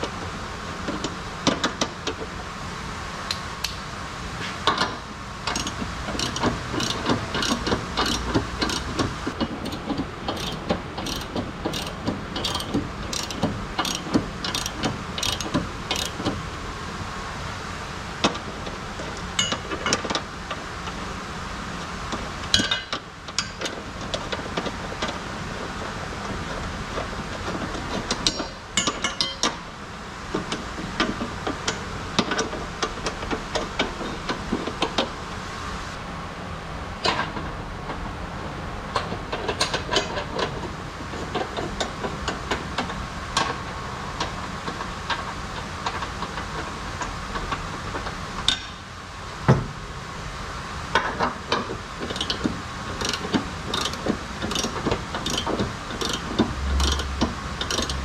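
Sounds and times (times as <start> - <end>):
steady background hum: 0.0 - 58.0
hand tools knocking on metal: 5.5 - 16.2, 52.1 - 58.0.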